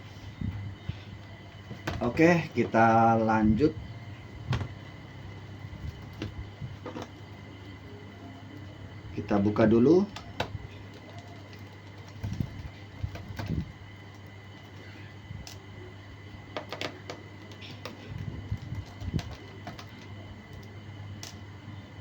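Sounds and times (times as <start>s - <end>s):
low electrical hum: 0.0s - 22.0s
laptop handling clicks and knocks: 5.9s - 7.2s, 16.5s - 20.1s.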